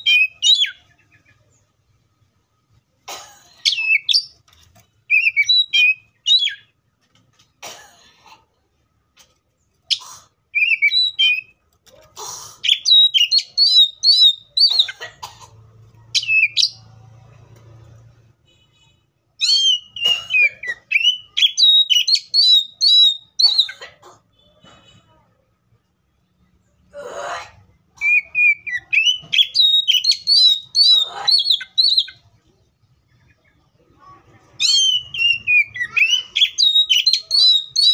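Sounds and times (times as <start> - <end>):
bird singing whistled notes: 5.1 - 6.7, 10.6 - 11.6, 12.7 - 14.7, 19.4 - 20.1, 20.7 - 23.7, 28.0 - 32.2, 34.6 - 37.9.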